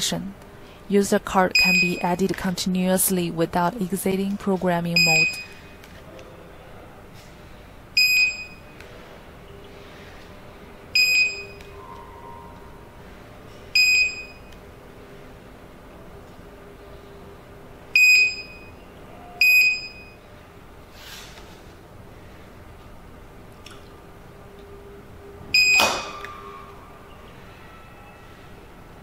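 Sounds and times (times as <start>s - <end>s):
keypad buzzer short high beeps: 5.0s - 5.6s.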